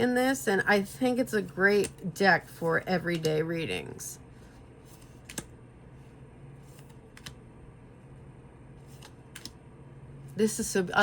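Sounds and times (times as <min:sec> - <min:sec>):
low steady hum: 0:00.0 - 0:11.0
cards clicking and flipping: 0:04.9 - 0:05.5, 0:06.7 - 0:07.4.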